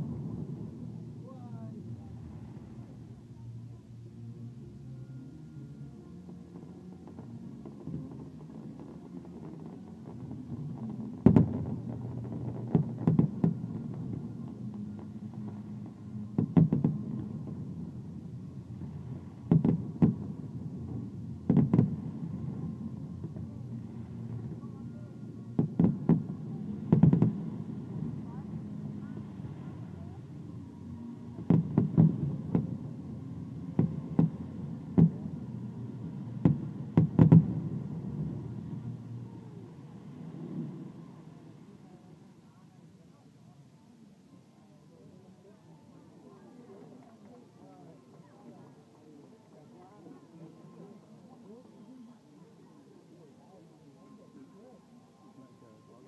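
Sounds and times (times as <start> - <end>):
steady low rumble: 0.0 - 42.4
fireworks bangs: 7.9 - 15.6, 16.3 - 17.9, 18.8 - 24.7, 25.5 - 28.4, 31.4 - 38.9.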